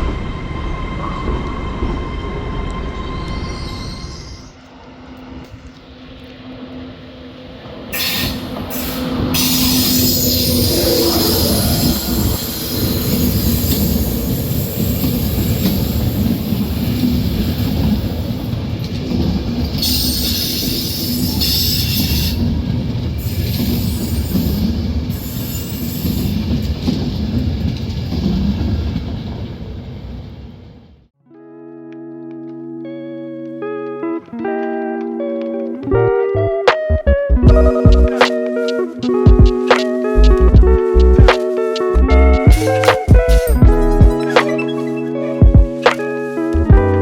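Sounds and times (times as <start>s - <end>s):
high wheel squeal: 0.0s - 5.3s, 7.1s - 17.7s, 19.7s - 22.4s, 23.2s - 26.5s, 37.5s - 47.0s
train rumbling past: 0.0s - 31.1s, 36.9s - 47.0s
steady hum: 37.3s - 44.2s.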